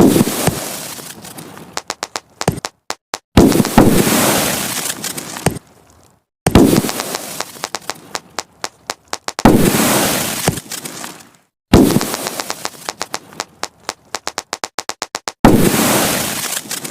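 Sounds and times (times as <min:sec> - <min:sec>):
fireworks crackle: 0:01.4 - 0:05.4, 0:06.6 - 0:10.9, 0:11.8 - 0:16.9
fireworks bangs: 0:01.8 - 0:04.6, 0:06.5 - 0:10.2, 0:11.7 - 0:16.1.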